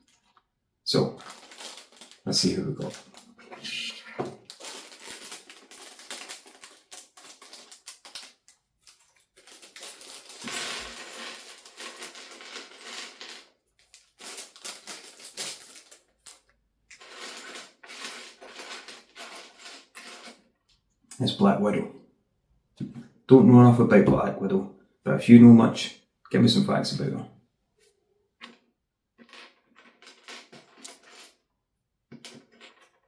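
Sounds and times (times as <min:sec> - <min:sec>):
plastic bag crinkling: 0:00.1 - 0:16.4
plastic pieces clicking and rattling: 0:01.2 - 0:02.2, 0:04.5 - 0:20.4.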